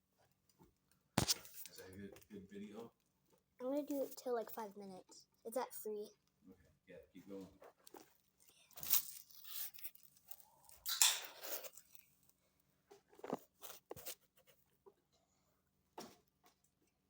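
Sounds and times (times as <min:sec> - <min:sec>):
kittens scratching on a box: 0:13.0 - 0:14.8.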